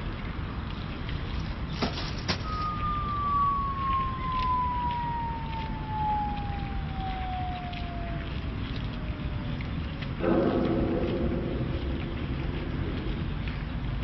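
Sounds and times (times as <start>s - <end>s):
steady outdoor noise: 0.0s - 14.0s
long falling whistle: 2.3s - 9.1s.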